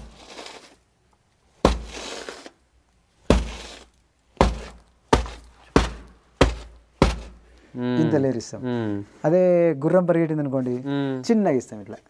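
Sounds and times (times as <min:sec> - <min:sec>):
heavy footstep thuds: 0:01.6 - 0:02.1, 0:03.3 - 0:03.8, 0:04.4 - 0:07.5
crunching rattling: 0:03.2 - 0:07.5.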